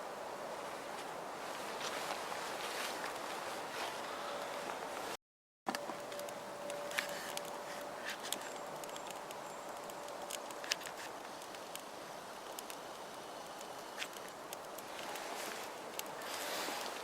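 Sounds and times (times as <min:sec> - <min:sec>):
wood fire crackling: 0:06.0 - 0:17.0
fire hissing: 0:07.0 - 0:17.0.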